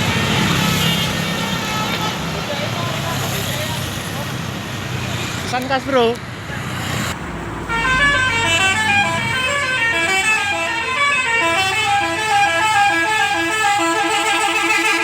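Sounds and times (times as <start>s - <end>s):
bus horn tooting a fast tune: 0.0s - 2.2s, 7.7s - 15.0s.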